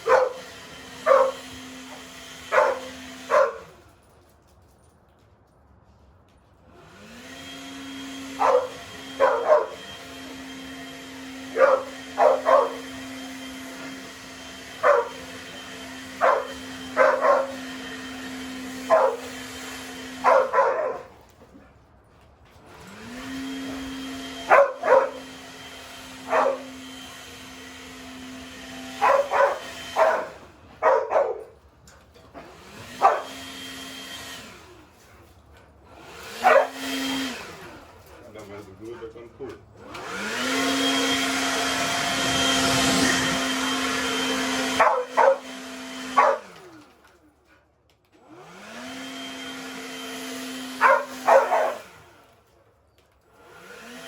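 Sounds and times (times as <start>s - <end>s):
dogs barking: 0.0s - 3.8s, 8.2s - 10.0s, 11.4s - 14.0s, 14.6s - 19.5s, 20.1s - 21.2s, 23.7s - 25.5s, 26.1s - 27.0s, 28.9s - 31.6s, 32.8s - 33.6s, 36.3s - 37.3s, 40.6s - 46.6s, 50.7s - 52.0s
electric motor humming: 6.8s - 21.1s, 22.7s - 31.4s, 32.4s - 34.8s, 35.9s - 37.9s, 39.8s - 46.8s, 48.2s - 52.4s.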